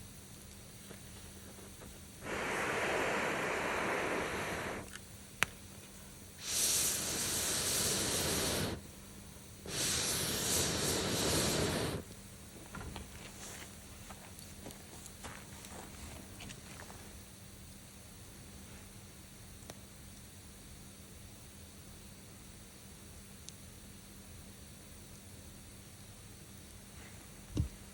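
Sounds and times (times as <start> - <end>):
rushes of air: 2.2 - 4.9, 6.4 - 8.8, 9.7 - 12.0.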